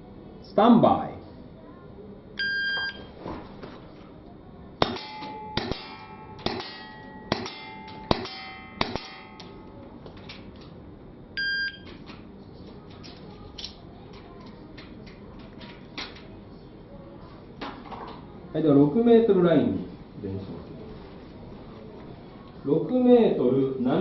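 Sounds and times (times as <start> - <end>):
shot timer buzzer beep: 2.4 - 3.1, 11.4 - 11.9
metallic ring of target: 4.8 - 9.5.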